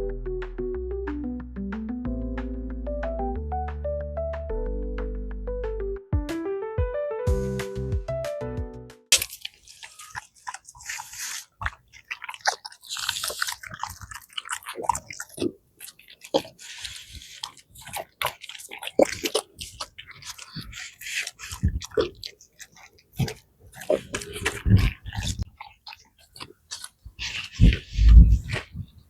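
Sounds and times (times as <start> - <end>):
bones cracking and crunching: 9.1 - 29.0
dog chewing wetly: 9.2 - 29.0.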